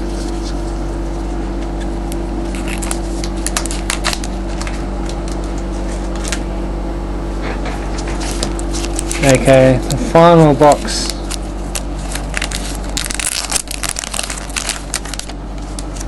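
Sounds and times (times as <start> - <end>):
electrical hum: 0.0 - 16.0
cards and packaging crinkling: 2.5 - 6.4, 8.2 - 16.0.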